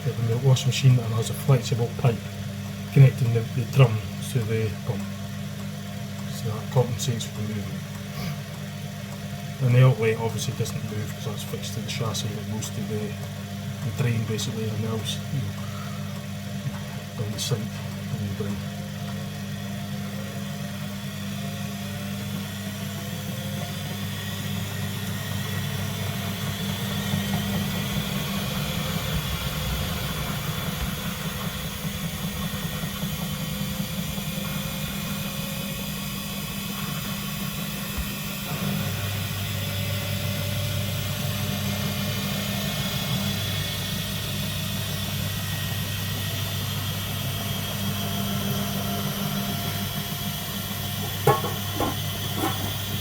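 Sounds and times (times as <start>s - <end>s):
washing machine hum: 0.0s - 53.0s.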